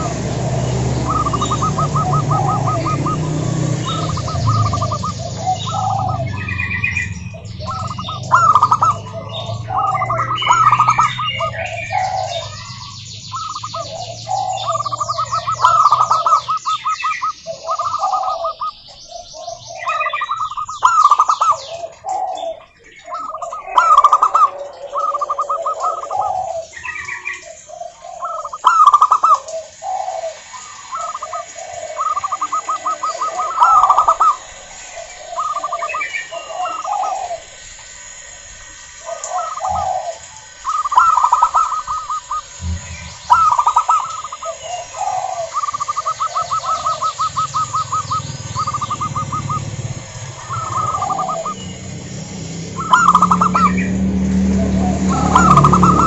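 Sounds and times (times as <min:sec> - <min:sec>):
low hum: 0:00.0 - 0:16.8, 0:29.6 - 0:56.0
doves cooing: 0:00.0 - 0:56.0
high chirping: 0:00.0 - 0:56.0.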